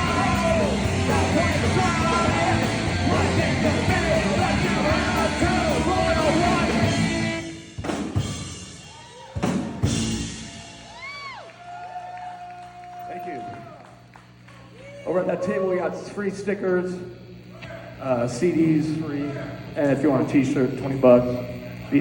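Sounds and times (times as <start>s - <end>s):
live rock band with singing: 0.0s - 7.8s
loud drum hits: 7.7s - 8.8s.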